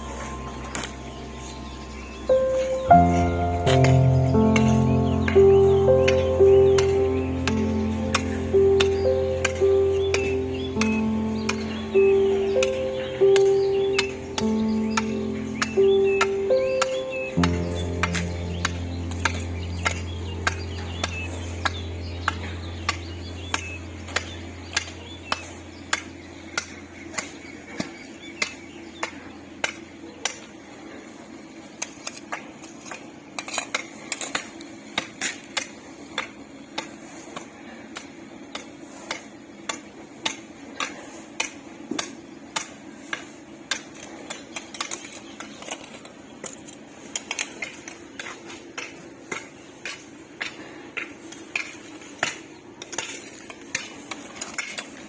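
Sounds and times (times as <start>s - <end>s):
low hum: 0.0s - 28.2s.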